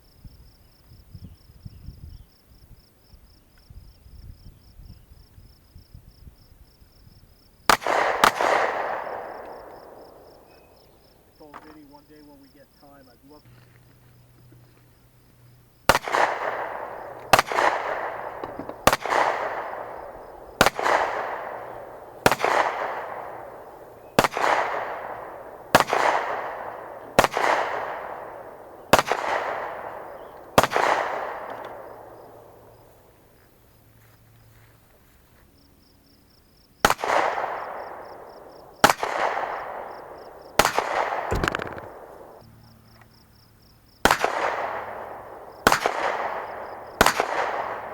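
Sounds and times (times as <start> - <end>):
gunshots with echo: 7.7 - 10.5, 15.9 - 32.7, 36.8 - 42.4, 44.0 - 47.9.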